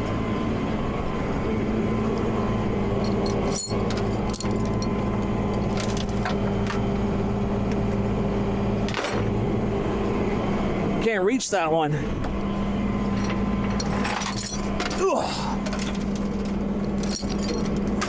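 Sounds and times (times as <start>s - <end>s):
truck engine idling: 0.0s - 18.0s
steel chain clinking: 3.0s - 6.4s, 13.2s - 18.0s.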